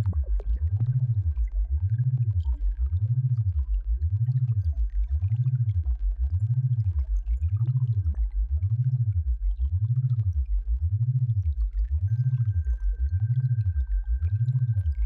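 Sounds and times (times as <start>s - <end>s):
low gliding pure tone: 12.2s - 15.0s.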